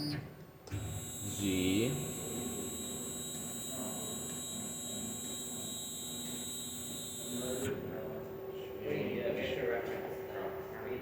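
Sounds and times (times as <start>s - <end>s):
milling machine motor hum: 0.7s - 7.7s
high-pitched whine: 0.9s - 7.7s.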